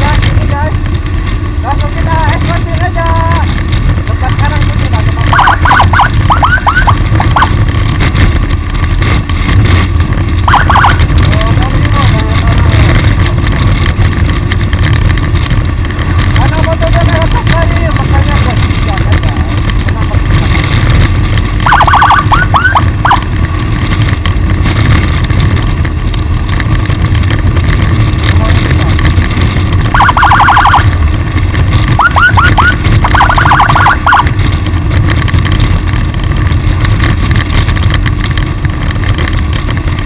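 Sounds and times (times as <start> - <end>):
vehicle rumble: 0.0 - 40.0
short siren chirps: 5.3 - 7.5, 21.6 - 23.2, 29.9 - 30.9, 32.0 - 34.2.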